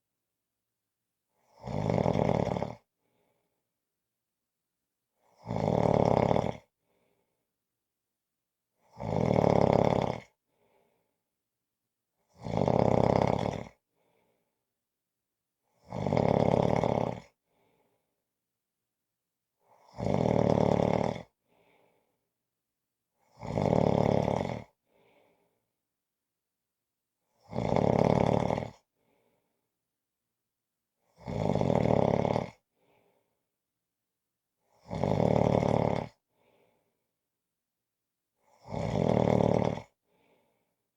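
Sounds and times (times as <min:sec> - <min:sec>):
person snoring loudly: 0:01.6 - 0:02.8, 0:05.4 - 0:06.7, 0:08.9 - 0:10.3, 0:12.3 - 0:13.8, 0:15.8 - 0:17.3, 0:19.8 - 0:21.3, 0:23.3 - 0:24.7, 0:27.4 - 0:28.8, 0:31.2 - 0:32.6, 0:34.8 - 0:36.2, 0:38.6 - 0:40.0.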